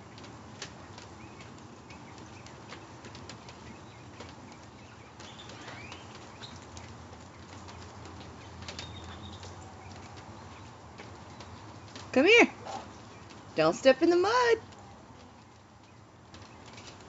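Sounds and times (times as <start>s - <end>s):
bird calling: 0.0s - 17.0s
rain falling and dripping: 0.0s - 17.0s.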